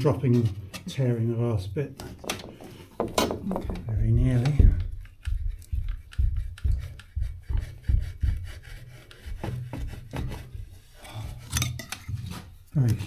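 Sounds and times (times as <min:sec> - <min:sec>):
wire sawing through sealant: 0:04.4 - 0:13.0.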